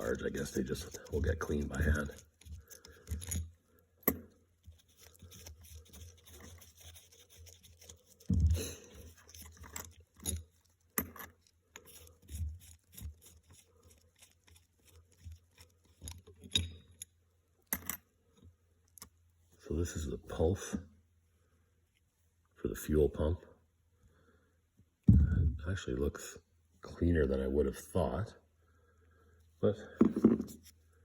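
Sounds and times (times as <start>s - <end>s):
hand tools clicking and scraping: 0.0s - 17.1s.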